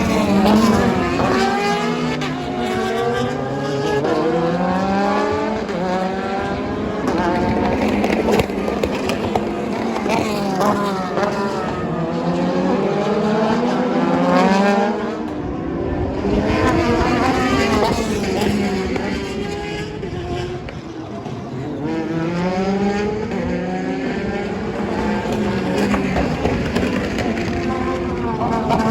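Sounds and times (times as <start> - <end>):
race cars passing at speed: 0.0 - 28.9.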